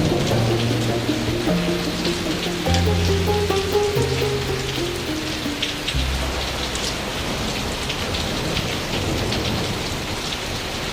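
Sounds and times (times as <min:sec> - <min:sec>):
soft music with low notes: 0:00.0 - 0:07.9.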